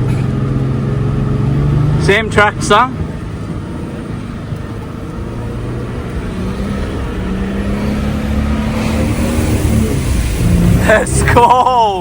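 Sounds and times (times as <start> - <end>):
vehicle engine driving on sand: 0.0 - 12.0.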